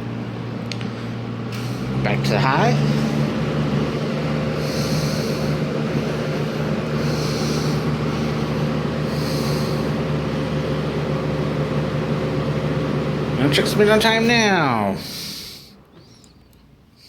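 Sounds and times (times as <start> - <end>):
box fan motor hum: 0.0 - 17.0.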